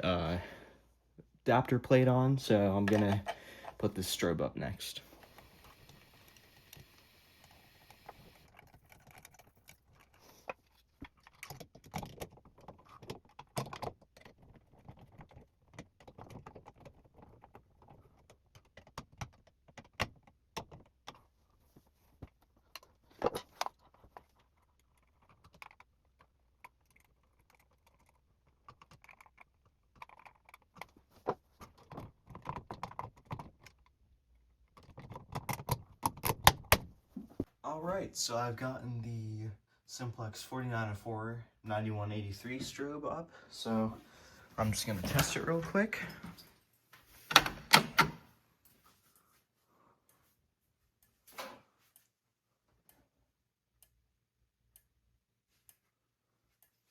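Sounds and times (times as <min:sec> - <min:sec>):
hardware clicks and clinks: 0:02.7 - 0:03.9.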